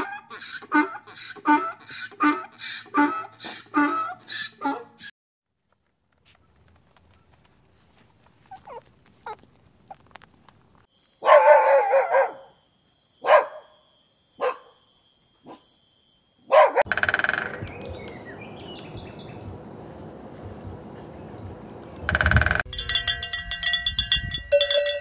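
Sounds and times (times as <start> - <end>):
dog barking: 4.6 - 5.0, 11.2 - 12.6, 13.2 - 13.8, 14.4 - 14.8, 15.4 - 15.7, 16.5 - 16.9.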